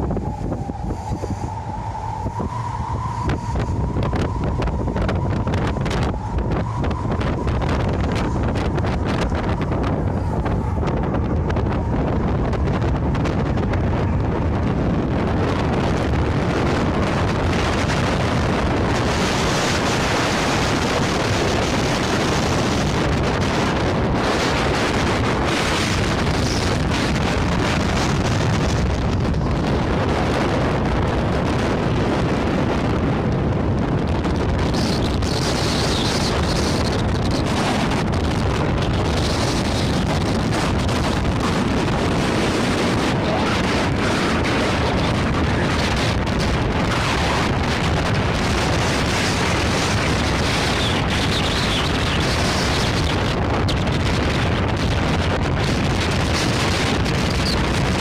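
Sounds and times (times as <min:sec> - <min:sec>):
jet engines rumbling: 0:00.0 - 0:58.0
wind buffeting microphone: 0:00.0 - 0:58.0.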